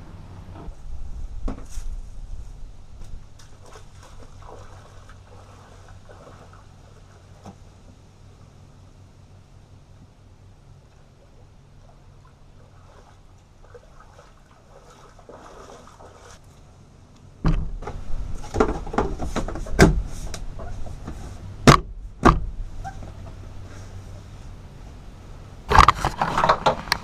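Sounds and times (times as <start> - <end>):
water splashing and gurgling: 3.4 - 7.4, 10.8 - 16.4.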